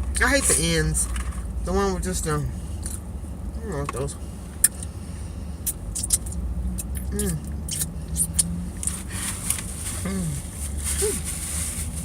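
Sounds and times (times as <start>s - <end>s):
low car rumble: 0.0s - 12.0s
chewing and lip-smacking: 5.6s - 9.0s
person humming: 7.1s - 7.5s, 10.0s - 11.3s.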